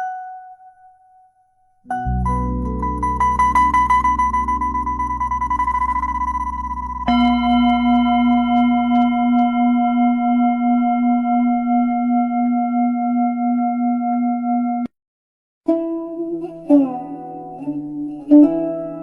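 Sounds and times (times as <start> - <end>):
pure tuning fork tones: 0.0 - 14.9.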